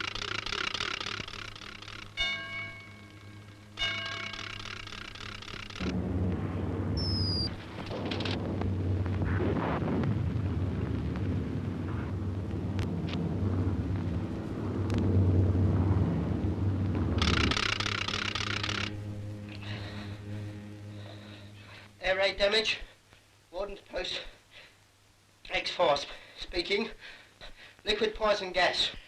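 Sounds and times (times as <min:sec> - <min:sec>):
loud low rumble: 0:05.0 - 0:22.5
high whistle: 0:07.0 - 0:07.6.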